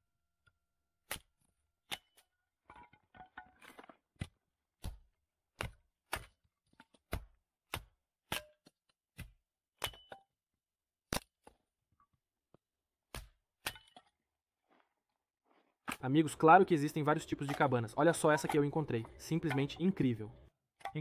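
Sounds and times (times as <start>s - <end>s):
axe splitting firewood: 1.0s - 11.9s, 13.0s - 14.2s, 15.5s - 21.0s.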